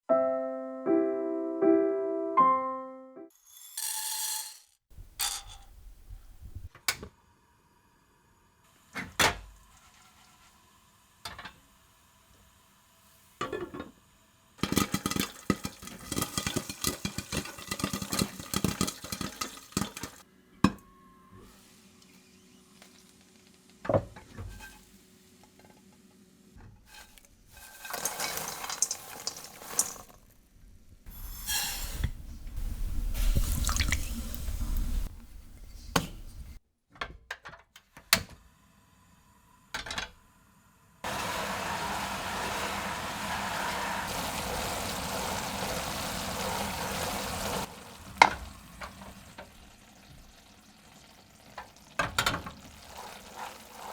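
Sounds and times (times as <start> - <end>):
pots and utensils knocking: 13.4 - 13.9, 14.6 - 20.8
pots and utensils rattling: 14.6 - 20.2, 26.8 - 30.2, 52.0 - 53.9.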